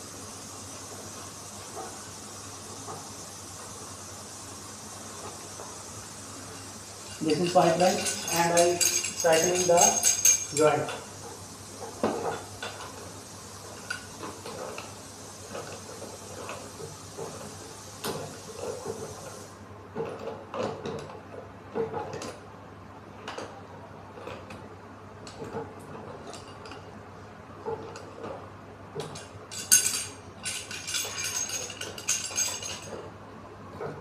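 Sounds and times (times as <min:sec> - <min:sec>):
metal pipe fittings clinking: 0:07.1 - 0:11.0, 0:29.0 - 0:33.0
rattling metal clatter: 0:07.1 - 0:11.0, 0:29.5 - 0:33.0.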